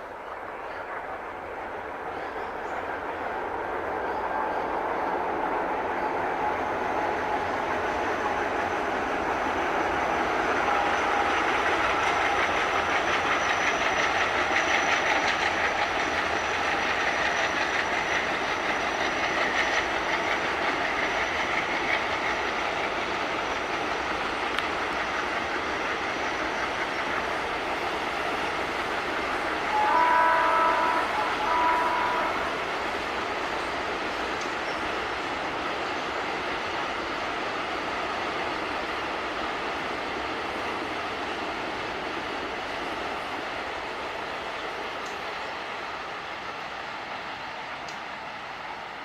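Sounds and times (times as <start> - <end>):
train wheel and rail clatter: 0.0 - 49.0
locomotive horn blasts: 29.6 - 32.7.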